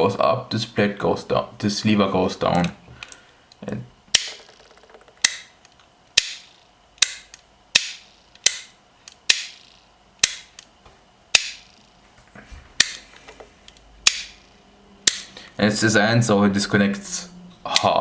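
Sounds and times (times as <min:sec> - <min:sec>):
pressure switch clicking: 0:10.2 - 0:10.7, 0:13.7 - 0:14.4, 0:15.1 - 0:15.4.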